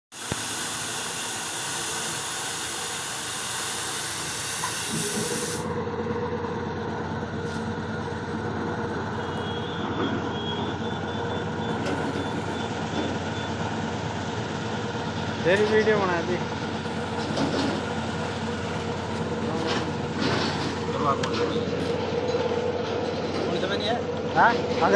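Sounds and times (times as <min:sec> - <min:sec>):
compressed air hissing: 0:00.1 - 0:05.7
steady machine hum: 0:00.1 - 0:09.8.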